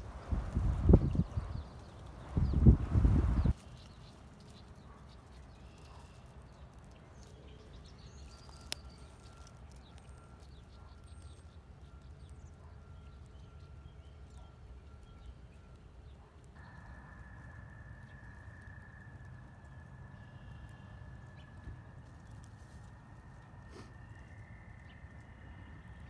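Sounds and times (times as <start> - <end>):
wind rumble on microphone: 0.0 - 3.6
faint bird chirps: 0.0 - 26.0.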